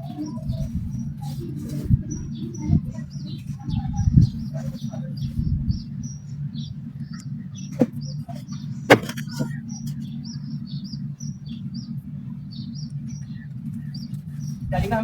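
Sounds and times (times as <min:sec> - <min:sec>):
small birds chirping: 0:00.0 - 0:15.0
steady low hum: 0:00.0 - 0:15.0.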